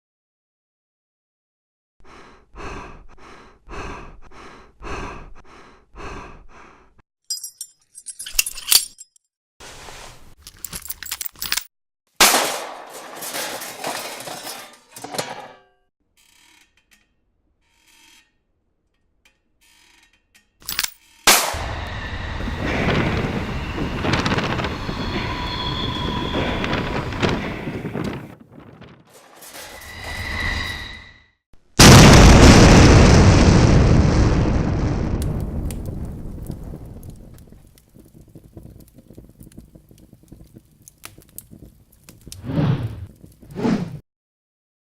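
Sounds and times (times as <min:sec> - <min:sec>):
clicks and metallic rattles: 0:10.4 - 0:11.7
dense rumble with ringing tones: 0:21.6 - 0:28.2.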